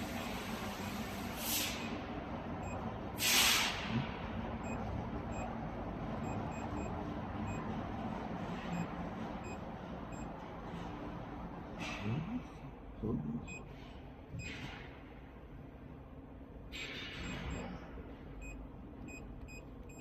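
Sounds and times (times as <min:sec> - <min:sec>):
machine hum: 0:00.0 - 0:20.0
short hisses: 0:03.2 - 0:04.0.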